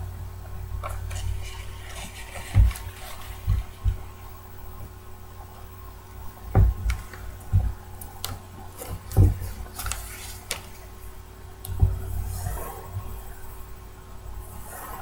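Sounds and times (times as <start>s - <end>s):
paper rustling and crinkling: 0.8s - 4.3s, 6.5s - 11.0s
dull thumps: 0.8s - 11.0s, 11.6s - 13.4s.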